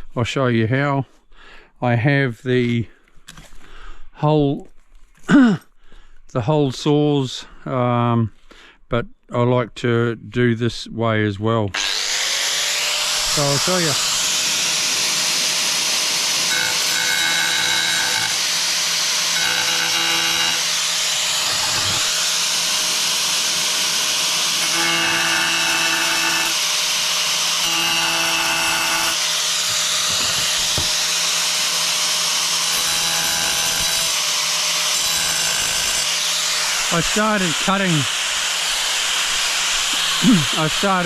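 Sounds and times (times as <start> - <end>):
power tool cutting ceramic tile: 11.7 - 41.0.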